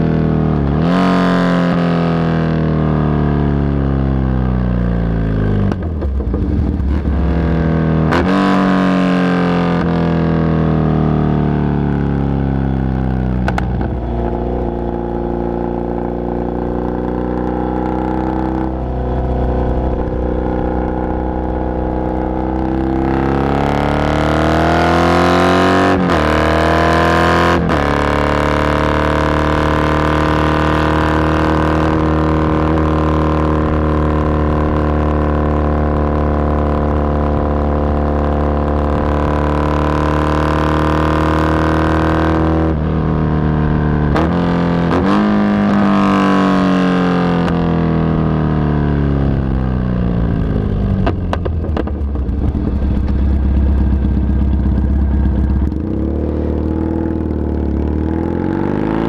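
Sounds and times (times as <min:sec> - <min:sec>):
motorcycle engine revving: 0:00.0 - 0:59.0
exhaust cracks: 0:13.4 - 0:14.9, 0:50.2 - 0:57.9.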